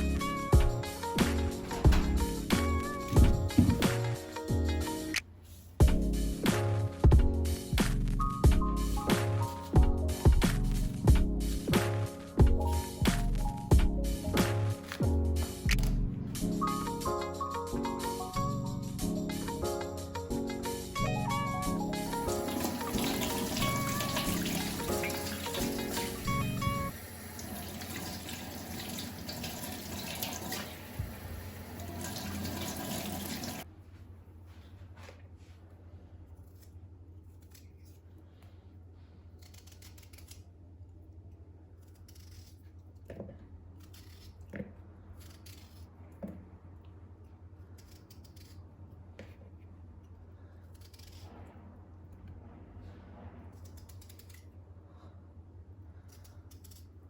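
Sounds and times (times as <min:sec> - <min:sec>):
tap water running into sink: 0:22.3 - 0:26.2, 0:27.0 - 0:33.6.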